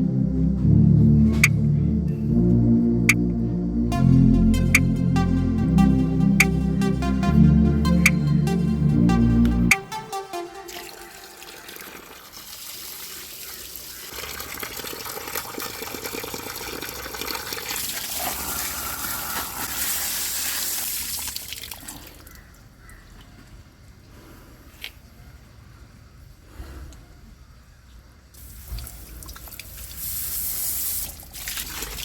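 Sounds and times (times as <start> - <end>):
water running from a tap: 10.8 - 21.6.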